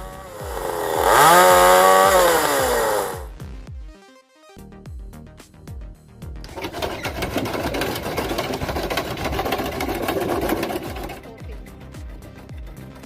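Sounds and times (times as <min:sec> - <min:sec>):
loud continuous machine noise: 0:00.0 - 0:03.3, 0:06.5 - 0:11.4
music with thumping beat: 0:00.0 - 0:04.0, 0:04.6 - 0:06.6, 0:07.2 - 0:13.0.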